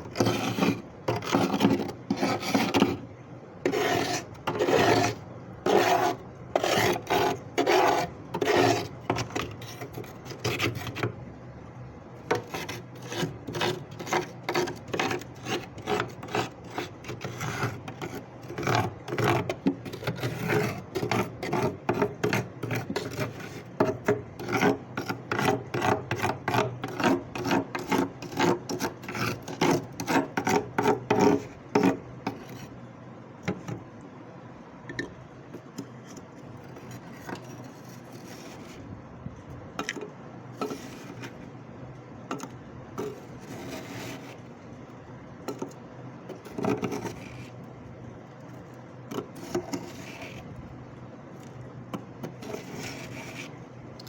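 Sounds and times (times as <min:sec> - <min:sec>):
frost being scraped: 0:00.0 - 0:03.0, 0:03.6 - 0:11.2, 0:12.3 - 0:32.8, 0:35.5 - 0:38.9, 0:40.6 - 0:41.5, 0:43.0 - 0:44.6, 0:46.3 - 0:47.7, 0:49.1 - 0:50.6, 0:52.3 - 0:53.6.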